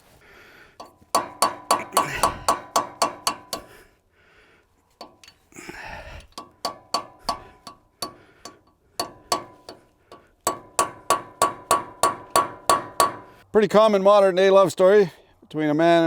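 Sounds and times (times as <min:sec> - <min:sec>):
hammer tapping steel on steel: 0:00.8 - 0:03.8, 0:05.0 - 0:13.4.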